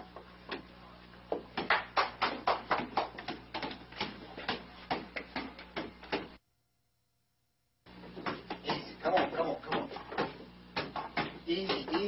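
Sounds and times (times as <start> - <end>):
basketball bouncing on hard floor: 8.2 - 12.0.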